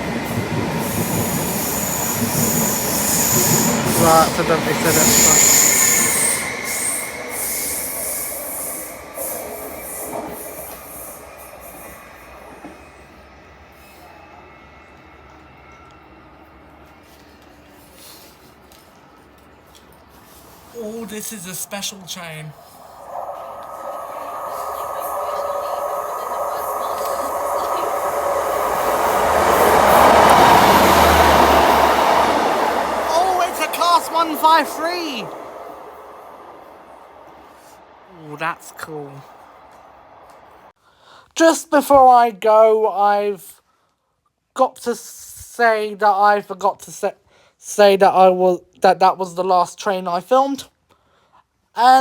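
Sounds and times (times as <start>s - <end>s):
train wheels squealing on rails: 0.0s - 21.4s, 22.6s - 40.7s.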